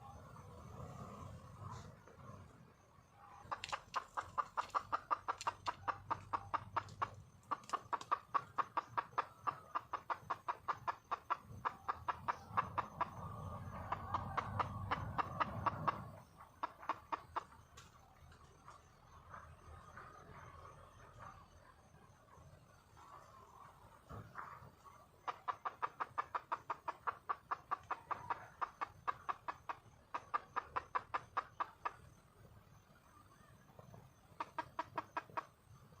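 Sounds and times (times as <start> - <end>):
hen clucking rapidly: 3.2 - 18.1, 23.0 - 32.5, 33.2 - 35.9.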